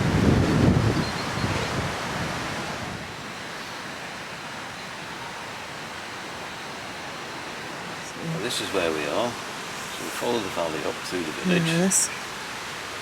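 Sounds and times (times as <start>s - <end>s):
wind buffeting microphone: 0.0s - 3.4s
river water flowing: 0.0s - 13.0s.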